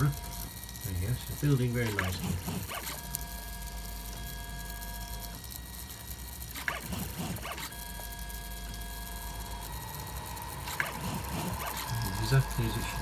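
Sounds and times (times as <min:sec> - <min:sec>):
stepper motors whining: 0:00.0 - 0:13.0.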